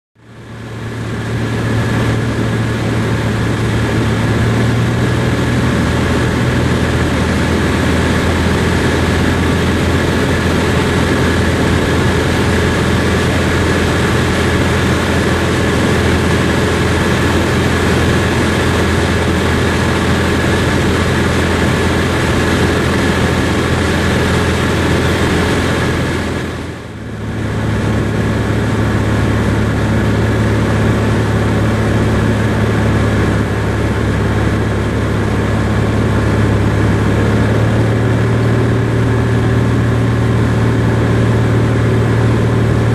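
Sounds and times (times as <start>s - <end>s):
propeller plane engine drone: 0.2s - 42.9s.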